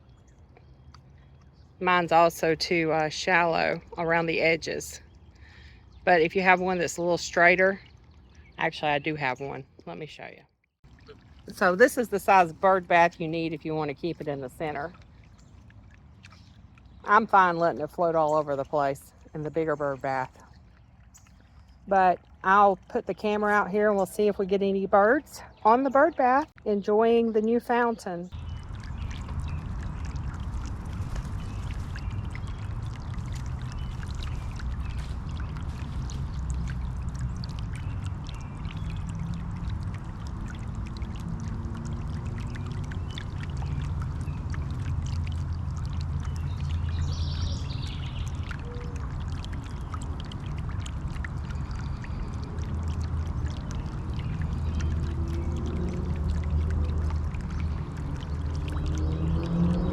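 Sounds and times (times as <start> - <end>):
water dripping: 0.0 - 59.9
fountain water splashing: 1.4 - 10.2, 10.9 - 59.9
low rumble: 28.3 - 59.9.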